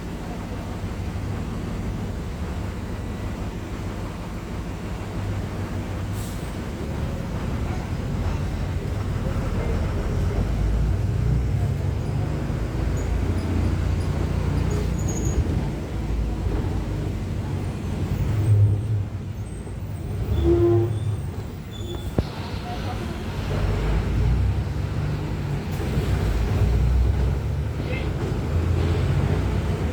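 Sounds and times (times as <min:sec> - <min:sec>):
diesel bus engine rumbling: 0:00.0 - 0:29.9.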